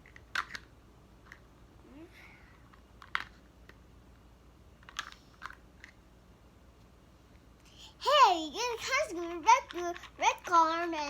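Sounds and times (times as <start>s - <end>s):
plastic toy cars knocking together: 0.0s - 0.7s.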